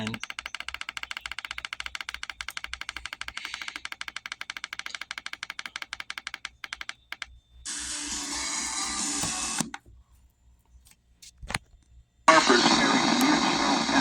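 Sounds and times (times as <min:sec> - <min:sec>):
radio tuning control clicking: 0:08.2 - 0:09.9, 0:12.3 - 0:14.0
hissy radio audio: 0:12.3 - 0:14.0.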